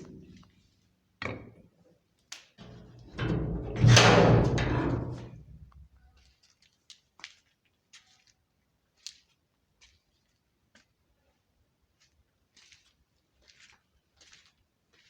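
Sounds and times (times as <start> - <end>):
gate scraping rumble: 2.6 - 5.6.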